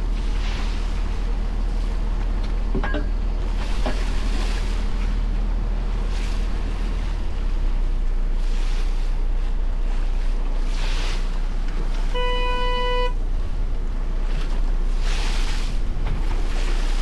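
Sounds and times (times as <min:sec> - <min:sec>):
boat engine rumble: 0:00.0 - 0:17.0
wind buffeting microphone: 0:13.2 - 0:17.0.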